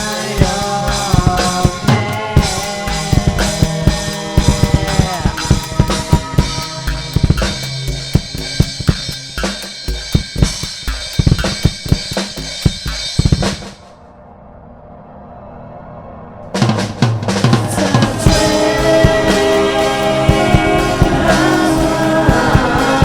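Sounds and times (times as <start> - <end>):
backing track: 0.0 - 13.9, 16.5 - 23.0
drum kit played fast: 0.0 - 13.9, 16.6 - 23.0.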